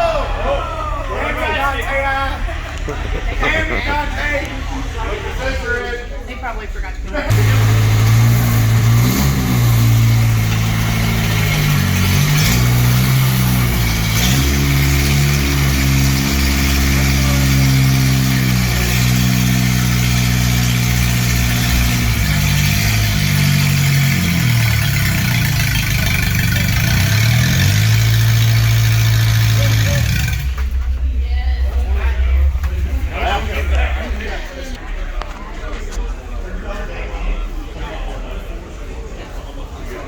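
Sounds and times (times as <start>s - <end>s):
vehicle engine revving: 7.3s - 34.8s.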